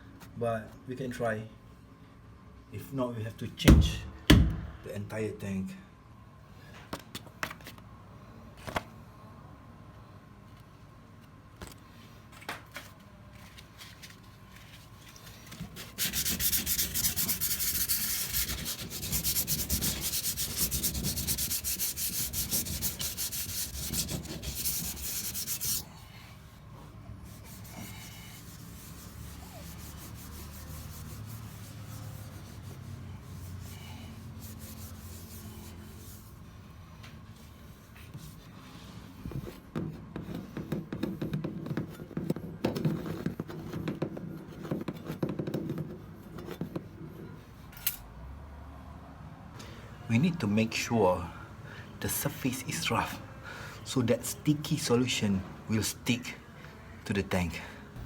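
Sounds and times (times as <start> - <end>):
faint rubbing: 14.6 - 36.5.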